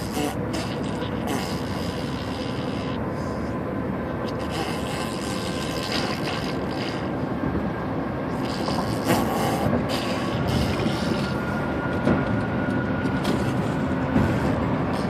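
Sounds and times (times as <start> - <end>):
baby blowing raspberries: 0.0 - 3.6, 4.2 - 7.3, 8.3 - 11.6, 13.1 - 15.0.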